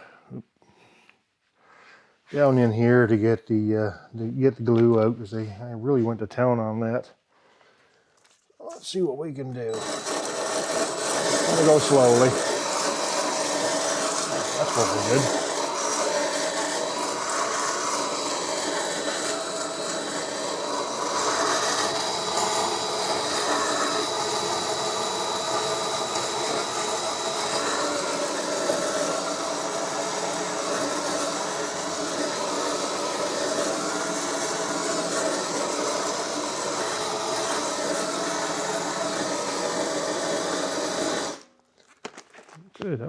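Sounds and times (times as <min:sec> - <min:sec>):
drill wire wheel scraping: 0:09.5 - 0:41.5.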